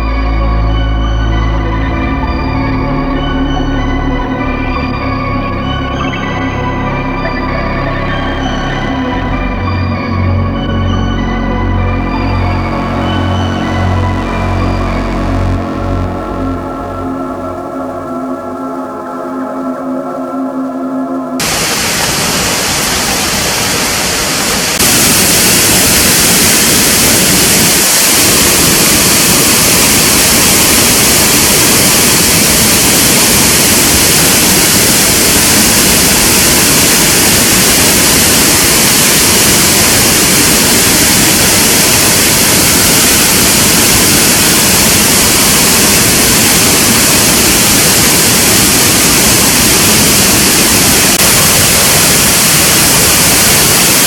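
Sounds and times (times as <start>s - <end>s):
waterfall rushing: 0.0s - 18.2s, 21.4s - 54.0s.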